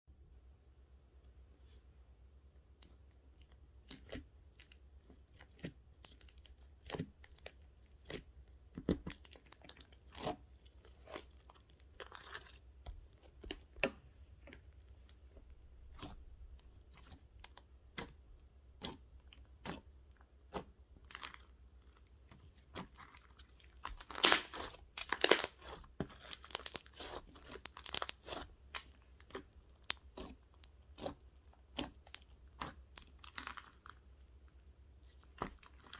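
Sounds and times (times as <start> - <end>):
crinkling and tearing: 22.6 - 34.3.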